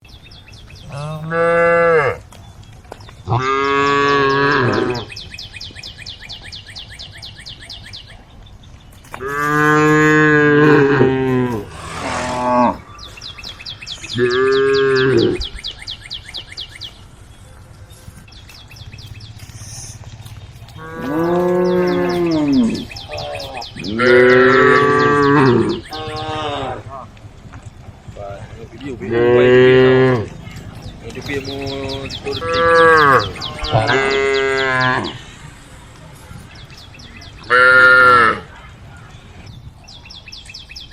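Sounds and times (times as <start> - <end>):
cows mooing: 0.8 - 2.3, 3.3 - 5.2, 9.2 - 15.6, 20.7 - 27.2, 28.2 - 35.4, 37.4 - 38.5.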